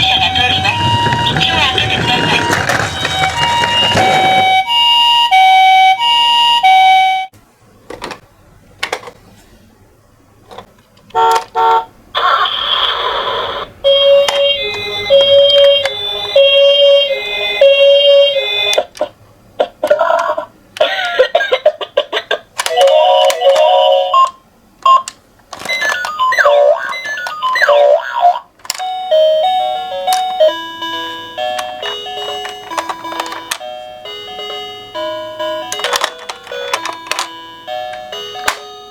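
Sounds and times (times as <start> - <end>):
toy electronic siren: 0.0 - 7.3, 12.2 - 18.9, 25.6 - 33.5.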